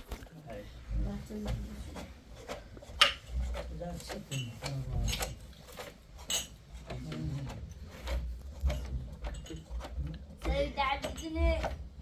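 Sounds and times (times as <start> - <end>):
objects clinking and knocking: 2.8 - 12.0.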